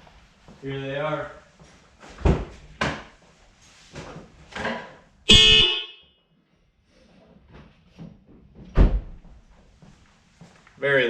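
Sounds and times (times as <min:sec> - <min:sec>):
car horn blast: 0:05.3 - 0:06.2.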